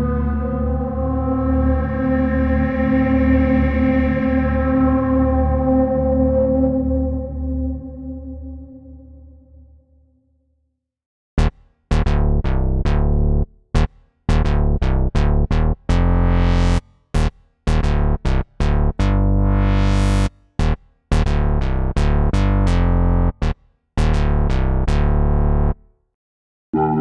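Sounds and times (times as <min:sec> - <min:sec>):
synthesizer bass notes: 0:11.4 - 0:25.8, 0:26.8 - 0:27.0.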